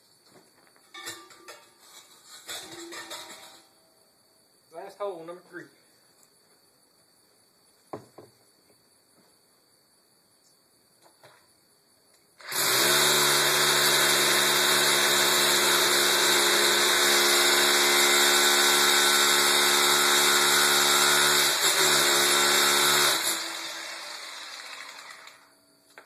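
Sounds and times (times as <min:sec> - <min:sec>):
hammer drill boring into concrete: 0:12.4 - 0:25.5.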